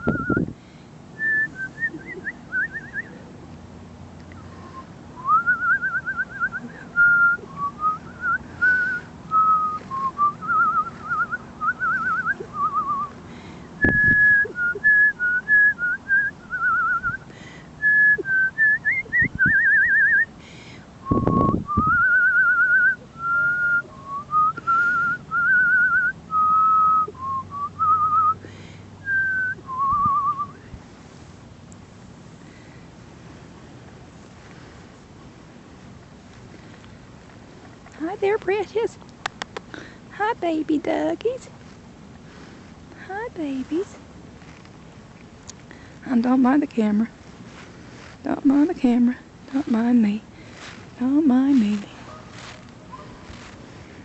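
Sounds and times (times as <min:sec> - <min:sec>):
person whistling a tune: 0:00.0 - 0:00.5, 0:01.2 - 0:03.1, 0:04.7 - 0:13.1, 0:13.8 - 0:17.2, 0:21.1 - 0:28.4, 0:29.0 - 0:30.6.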